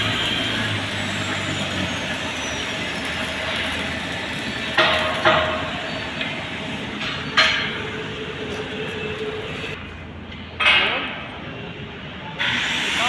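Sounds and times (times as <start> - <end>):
hammer striking steel: 4.6 - 8.8.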